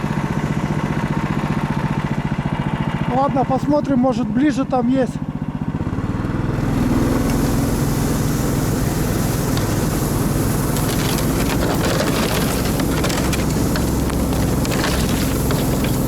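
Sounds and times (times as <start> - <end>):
small engine running: 0.0 - 16.0
clicks and crackles: 9.5 - 16.0.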